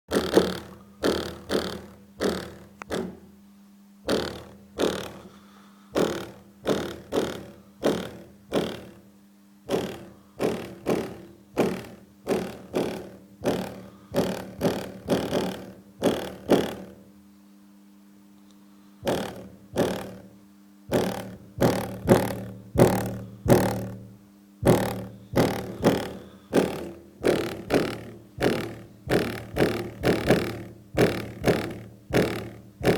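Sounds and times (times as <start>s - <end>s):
distorted bass hits: 19.0s - 32.9s.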